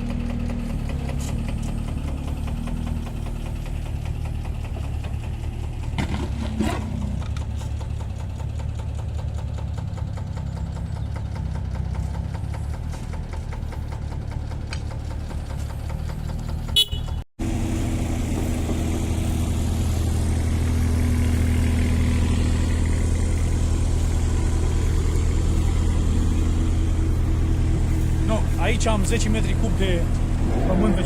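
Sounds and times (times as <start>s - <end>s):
diesel engine running: 0.0s - 31.0s
short high toot: 16.8s - 17.2s.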